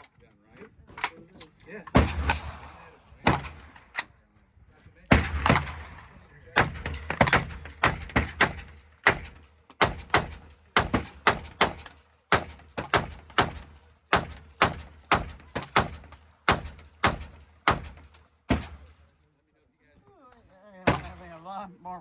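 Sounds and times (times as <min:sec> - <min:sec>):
gunshots ringing: 0:01.9 - 0:04.0, 0:05.1 - 0:19.0, 0:20.8 - 0:21.4.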